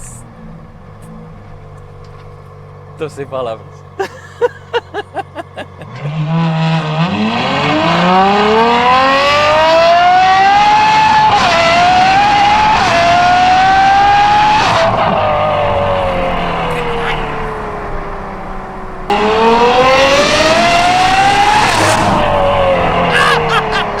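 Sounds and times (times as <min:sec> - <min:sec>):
sports car engine revving: 0:04.9 - 0:24.0.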